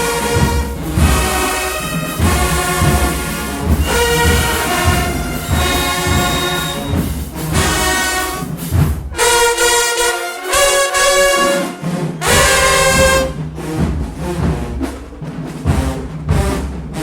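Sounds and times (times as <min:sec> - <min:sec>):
brass chords: 0:00.0 - 0:17.0
bass drum hits: 0:02.2 - 0:07.9, 0:12.2 - 0:14.7.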